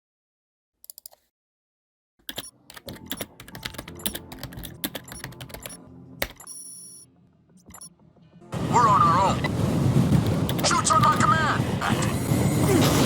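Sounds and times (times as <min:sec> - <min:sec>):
computer keyboard typing: 0:02.2 - 0:07.0.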